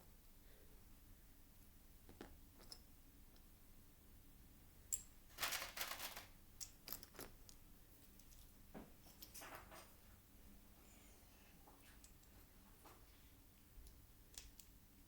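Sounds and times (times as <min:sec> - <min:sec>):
plastic pieces rattling: 0:05.3 - 0:06.3.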